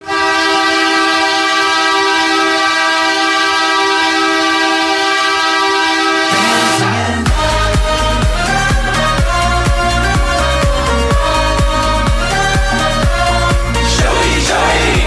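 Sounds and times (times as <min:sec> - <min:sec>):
goal horn blaring: 0:00.0 - 0:14.7
goal song music: 0:05.7 - 0:15.0.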